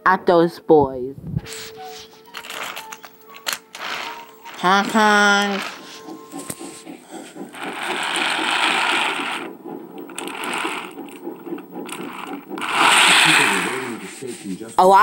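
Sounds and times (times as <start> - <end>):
small geared motor rattling: 2.4 - 14.4
loud hiss bursts: 12.6 - 14.3.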